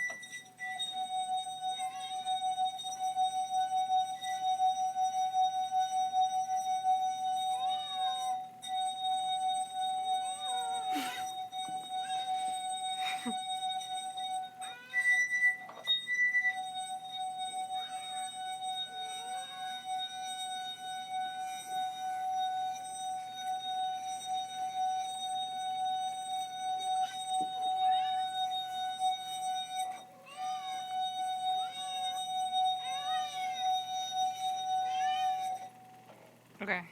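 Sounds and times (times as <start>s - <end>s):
continuous high tone: 0.0s - 36.9s.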